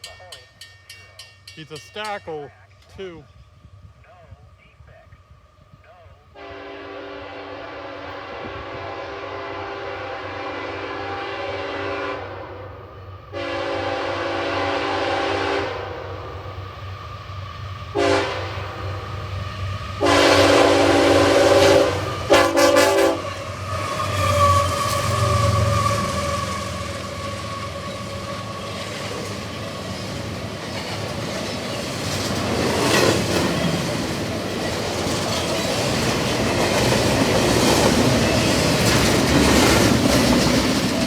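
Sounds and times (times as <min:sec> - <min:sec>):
passing train rumble: 0:00.0 - 0:41.0
locomotive air horn: 0:06.4 - 0:12.7, 0:13.3 - 0:16.2, 0:17.9 - 0:19.1, 0:20.0 - 0:29.0.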